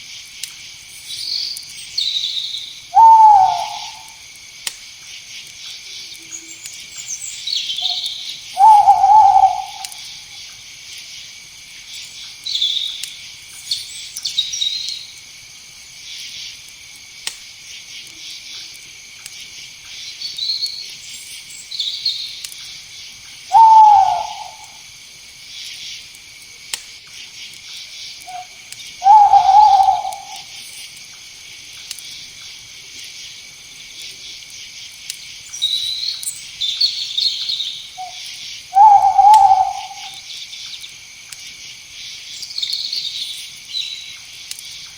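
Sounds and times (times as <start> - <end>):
night insects chorus: 0.0 - 44.9
faint chirps: 0.9 - 4.3, 5.8 - 10.6, 23.5 - 24.9, 27.8 - 31.0, 35.4 - 41.0
owl hooting: 2.9 - 4.2, 7.8 - 10.3, 23.5 - 24.8, 28.3 - 30.6, 37.0 - 40.3.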